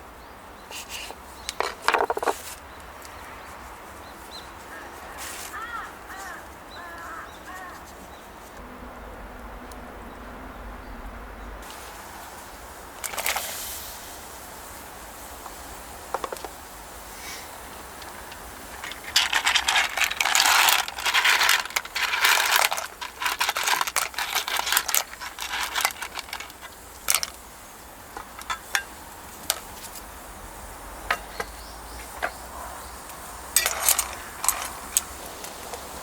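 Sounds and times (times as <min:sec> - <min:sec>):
rustling and light clinks: 0:00.9 - 0:02.8, 0:17.8 - 0:27.4, 0:28.1 - 0:30.1, 0:33.6 - 0:36.0.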